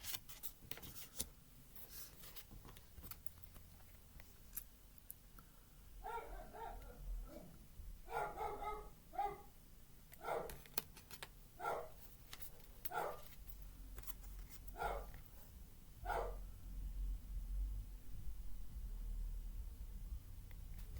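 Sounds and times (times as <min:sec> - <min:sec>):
dog barking: 0:06.0 - 0:09.5, 0:10.2 - 0:10.6, 0:11.6 - 0:12.0, 0:12.9 - 0:13.2, 0:14.8 - 0:15.2, 0:16.0 - 0:16.4.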